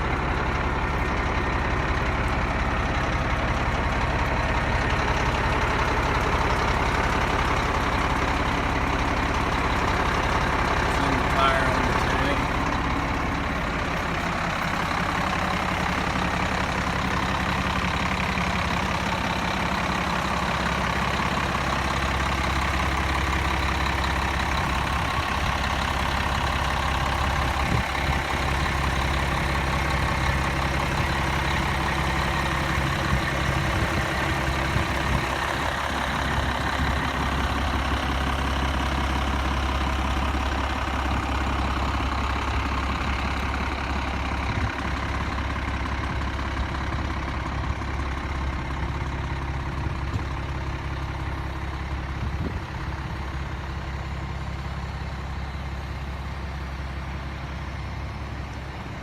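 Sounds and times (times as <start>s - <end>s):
diesel engine idling: 0.0s - 59.0s.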